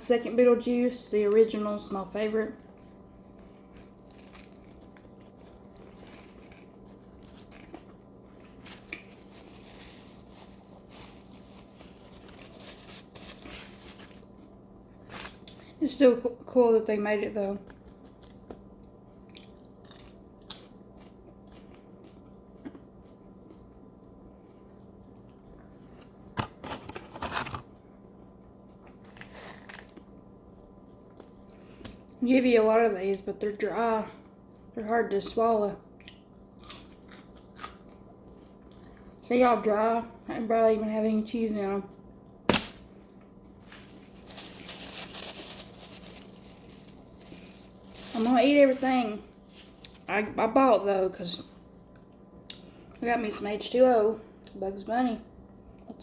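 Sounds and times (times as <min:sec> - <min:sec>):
steady low hum: 0:00.0 - 0:56.0
paper packaging crinkling: 0:03.4 - 0:14.4, 0:15.0 - 0:15.6, 0:43.6 - 0:50.2
chewing and mouth sounds: 0:17.6 - 0:23.8, 0:24.6 - 0:26.0.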